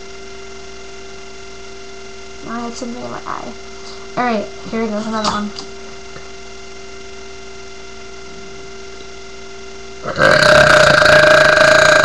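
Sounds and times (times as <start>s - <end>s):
electrical hum: 0.0s - 12.0s
girl burping: 10.1s - 12.0s.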